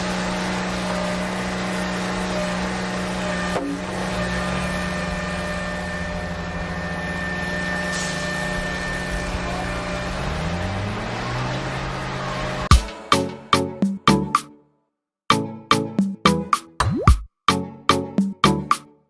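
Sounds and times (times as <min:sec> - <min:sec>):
engine-like hum: 0:00.0 - 0:13.5.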